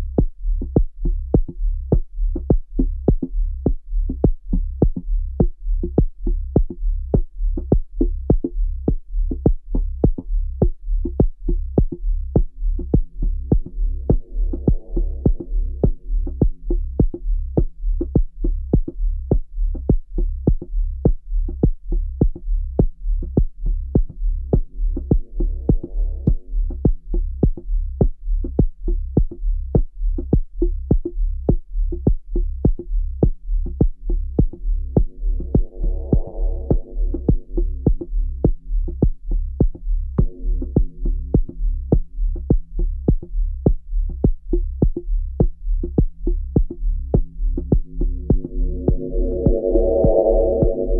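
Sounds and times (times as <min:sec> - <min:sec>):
low bass drone: 0:11.5 - 0:18.6, 0:22.0 - 0:27.9, 0:34.2 - 0:50.9
synthesizer pad: 0:35.2 - 0:37.2, 0:48.0 - 0:50.9.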